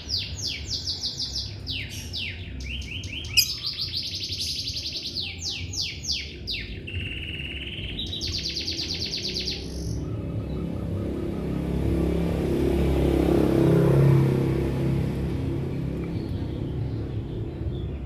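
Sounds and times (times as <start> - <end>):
lovebird chirping: 0.0 - 11.4.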